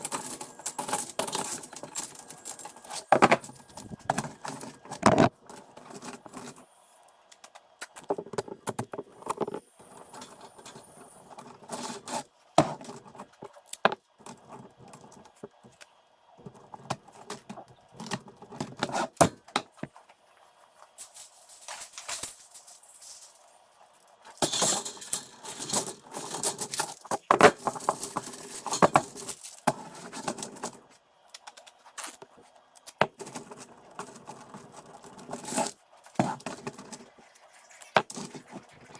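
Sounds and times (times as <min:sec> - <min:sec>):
metal scraping: 0:35.3 - 0:38.9.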